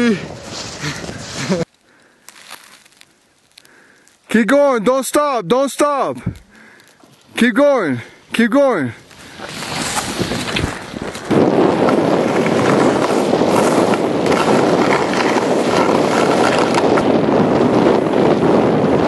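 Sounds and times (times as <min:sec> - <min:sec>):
wind rushing over microphone: 0:07.3 - 0:19.0.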